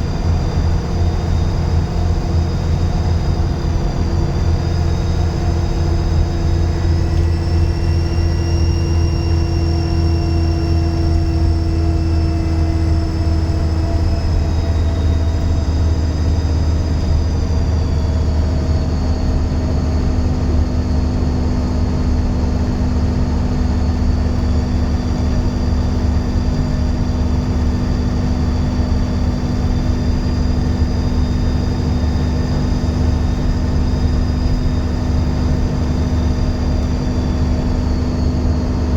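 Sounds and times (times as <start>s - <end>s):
bus diesel engine drone: 0.0s - 38.9s
high turbocharger whistle: 0.0s - 38.9s.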